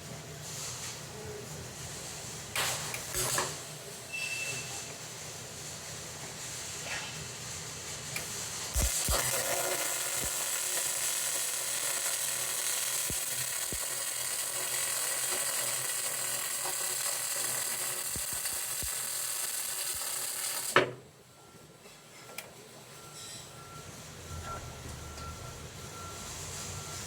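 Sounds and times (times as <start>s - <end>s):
welding arc crackling and hissing: 2.6s - 3.8s, 8.2s - 20.8s.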